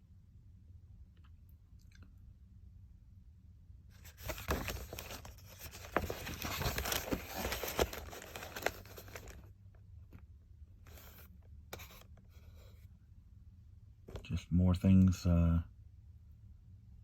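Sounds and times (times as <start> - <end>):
paper pages rustling: 4.0 - 9.5, 10.9 - 12.1.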